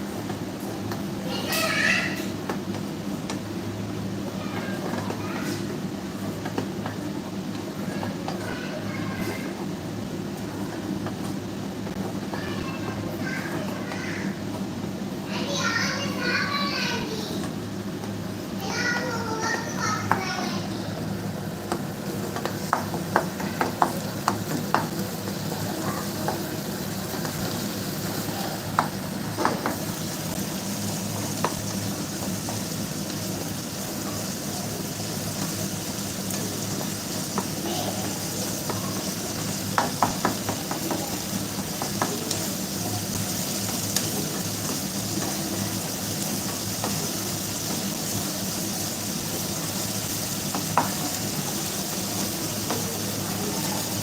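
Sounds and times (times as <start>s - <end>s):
gravy sizzling: 0.0s - 54.0s.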